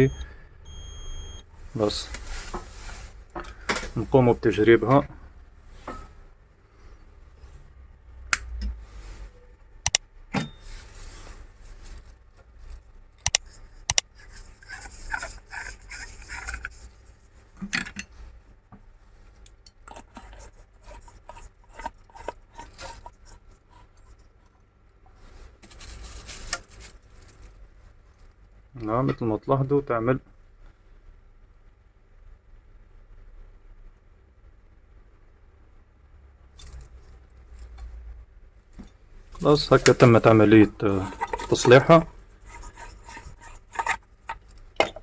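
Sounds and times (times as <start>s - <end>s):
scraping and rubbing: 10.7s - 17.5s, 19.9s - 24.3s, 39.4s - 44.8s.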